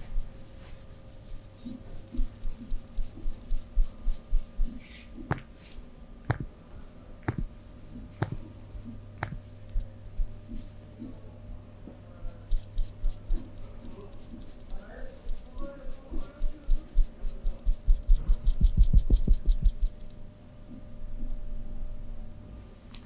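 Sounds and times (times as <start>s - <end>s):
soft taps on skin: 6.3s - 6.5s, 7.2s - 7.5s, 8.2s - 11.1s.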